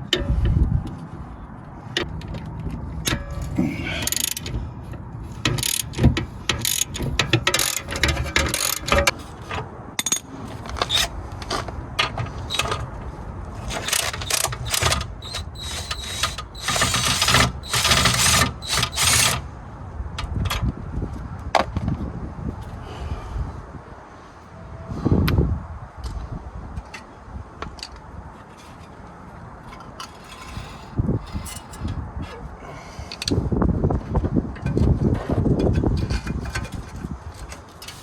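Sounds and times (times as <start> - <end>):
ratchet wrench clicking: 3.9 - 4.6, 5.4 - 9.1, 13.6 - 19.4.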